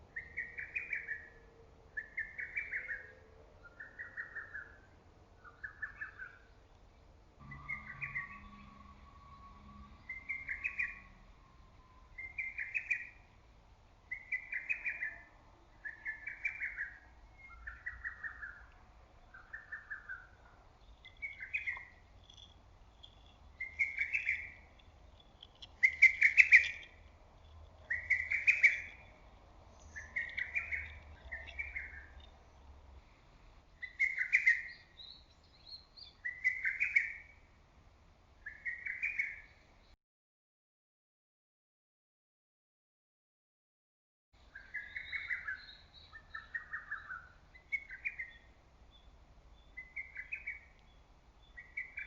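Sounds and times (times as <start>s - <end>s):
cuckoo whistled song: 7.4s - 13.2s, 14.1s - 18.7s, 23.6s - 24.6s, 25.8s - 27.0s, 27.9s - 29.1s, 33.8s - 37.3s, 44.6s - 48.5s
faint high bird notes: 7.4s - 13.2s.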